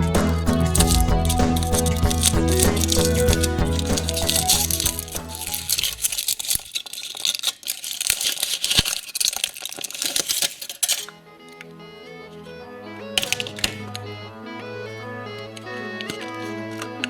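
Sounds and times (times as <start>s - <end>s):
background music: 0.0s - 6.3s, 10.8s - 17.0s
wrapper and plastic capsule rustling: 0.0s - 11.7s, 13.2s - 14.1s, 15.4s - 17.0s.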